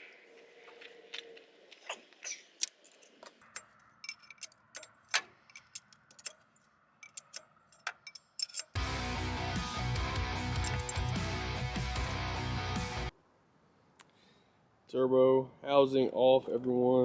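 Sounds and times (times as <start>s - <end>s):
ratchet clicking on bolts: 2.6s - 6.4s, 7.0s - 8.8s, 10.6s - 11.2s.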